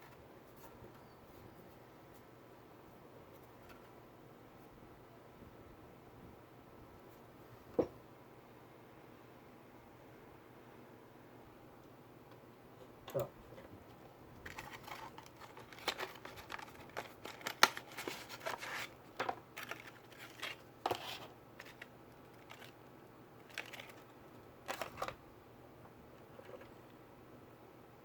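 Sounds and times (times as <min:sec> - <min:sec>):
laptop parts clicking and scraping: 0:14.4 - 0:22.8, 0:23.4 - 0:24.1, 0:24.7 - 0:25.2.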